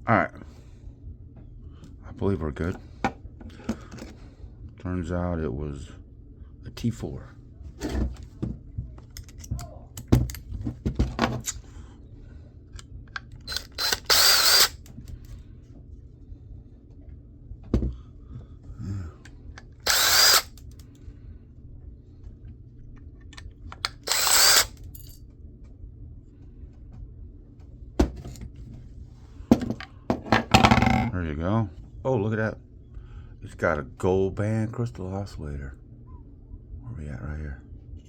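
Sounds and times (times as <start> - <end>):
power screwdriver whining: 13.4 - 14.9, 19.8 - 20.6, 23.9 - 24.8.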